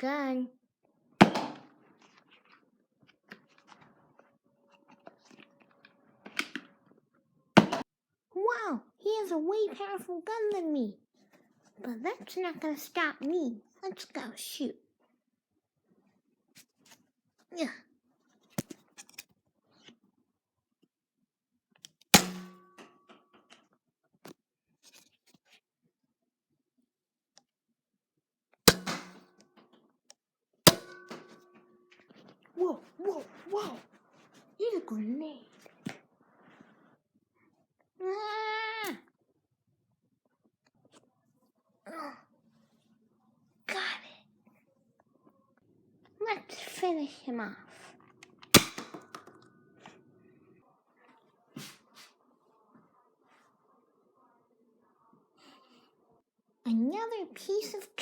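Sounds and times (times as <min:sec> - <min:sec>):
dart blaster shots: 0:22.2 - 0:22.6, 0:28.7 - 0:29.2.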